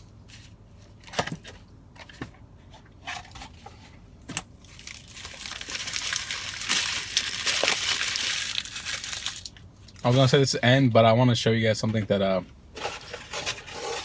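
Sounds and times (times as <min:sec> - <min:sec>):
food wrapper crinkling: 0:04.6 - 0:10.2.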